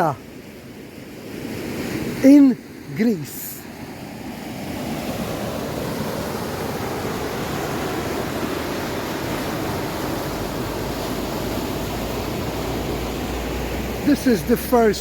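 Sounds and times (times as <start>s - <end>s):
steady rushing noise: 5.0s - 15.0s.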